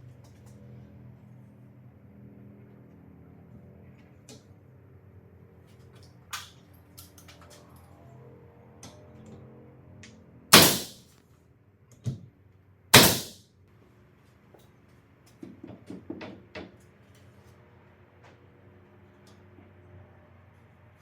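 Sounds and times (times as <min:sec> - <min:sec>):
loud sharp workshop bangs: 0:10.6 - 0:11.0, 0:13.0 - 0:13.4.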